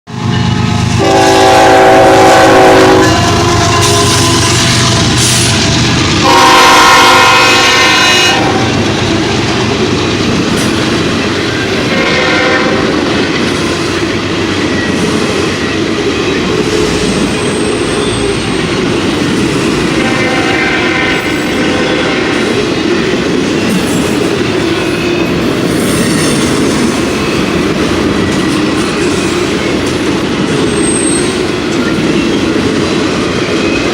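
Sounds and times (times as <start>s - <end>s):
train wheels clattering on rail joints: 0.4s - 33.9s
train air horn blasts: 1.0s - 5.6s, 6.2s - 8.8s, 11.8s - 13.1s, 19.9s - 22.6s.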